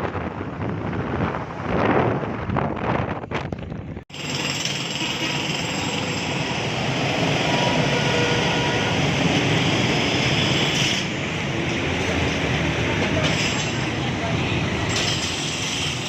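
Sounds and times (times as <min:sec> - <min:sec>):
wind and motorcycle road noise: 0:00.0 - 0:16.0.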